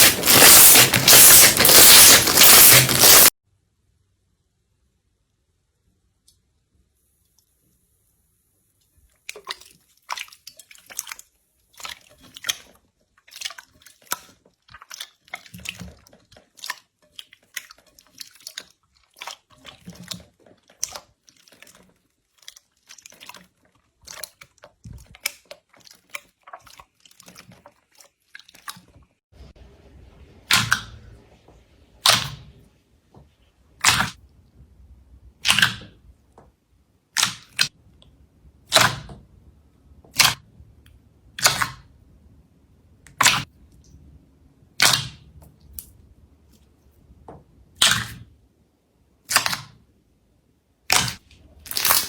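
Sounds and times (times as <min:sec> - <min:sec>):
sharp slime pops: 0:00.0 - 0:03.3, 0:30.5 - 0:30.9, 0:32.0 - 0:32.5, 0:33.8 - 0:34.2, 0:35.4 - 0:36.0, 0:37.2 - 0:37.7, 0:38.7 - 0:39.2, 0:40.1 - 0:40.4, 0:41.4 - 0:41.8, 0:43.1 - 0:43.5, 0:44.8 - 0:45.9, 0:47.8 - 0:48.3, 0:49.3 - 0:49.8, 0:50.9 - 0:52.0
slime squeezed by hand: 0:00.0 - 0:03.3, 0:35.4 - 0:36.0, 0:43.2 - 0:43.5, 0:47.8 - 0:48.3, 0:50.9 - 0:52.0.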